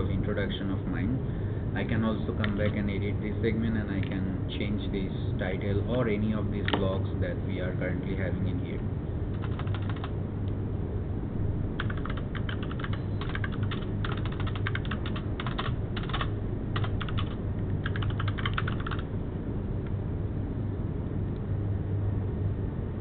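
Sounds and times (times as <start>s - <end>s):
typing on computer keyboard: 9.4s - 10.1s, 11.8s - 19.0s.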